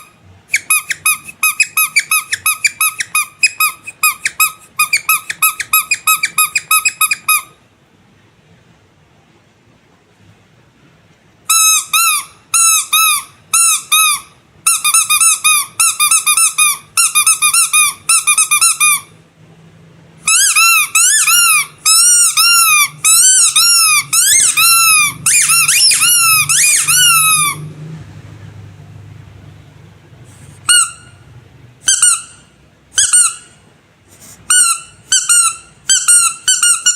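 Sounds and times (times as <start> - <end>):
rubber squeaky toy squeaking: 0.0 - 7.6, 11.5 - 19.2, 20.2 - 27.7, 30.5 - 31.2, 31.8 - 33.6, 34.4 - 36.9.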